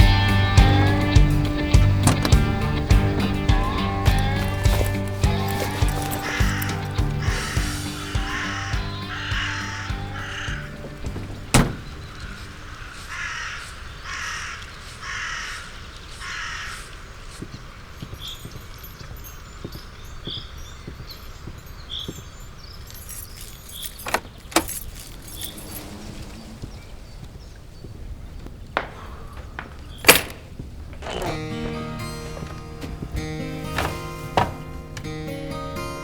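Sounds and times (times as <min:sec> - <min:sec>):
crows cawing: 0:05.2 - 0:17.7.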